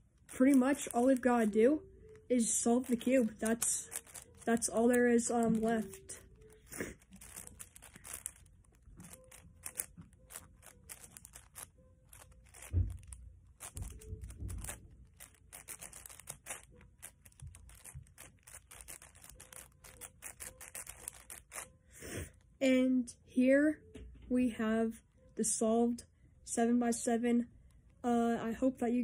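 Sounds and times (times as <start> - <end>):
puzzle cube clicking: 0.2 - 21.6.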